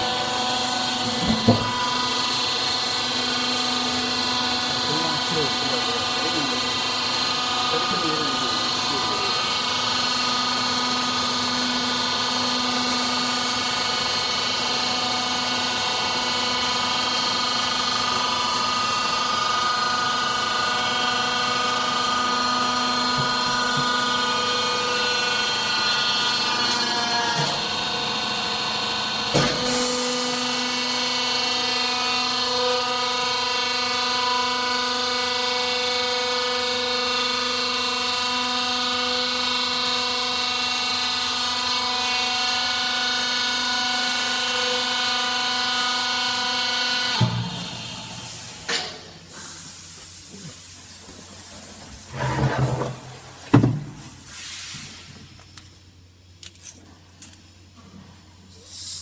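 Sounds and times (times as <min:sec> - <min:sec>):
hydraulic unit humming and whining: 0:00.0 - 0:59.0.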